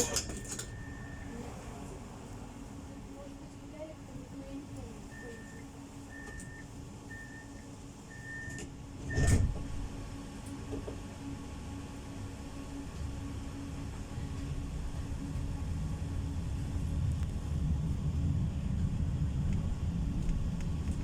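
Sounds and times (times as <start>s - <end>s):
door-warning beeps: 0.0s - 1.3s, 5.1s - 9.4s
tram doors shutting: 0.0s - 16.1s
tram moving with low hum: 0.0s - 21.0s.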